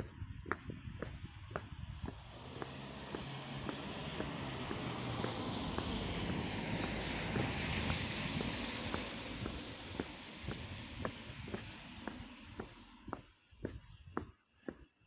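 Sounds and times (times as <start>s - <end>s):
footsteps in snow: 0.0s - 14.9s
rushing noise: 2.2s - 13.2s.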